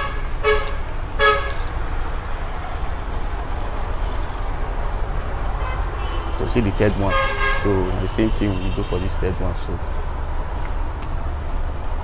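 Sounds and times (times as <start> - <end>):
short horn toots: 0.0 - 1.6.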